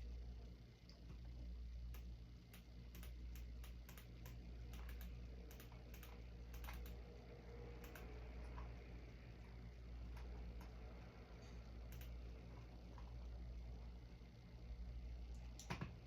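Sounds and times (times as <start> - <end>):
low hum: 0.0 - 16.0
keyboard typing: 3.0 - 7.0, 7.8 - 8.7, 11.9 - 12.2.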